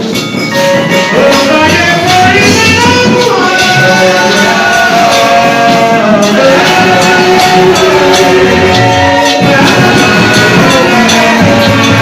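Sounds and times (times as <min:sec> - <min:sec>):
percussion strikes: 0:00.0 - 0:12.0.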